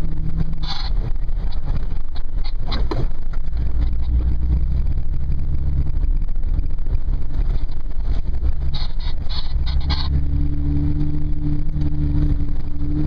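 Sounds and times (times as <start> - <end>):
engine low rumble: 0.0 - 13.0
knocks and rattles: 0.6 - 4.3.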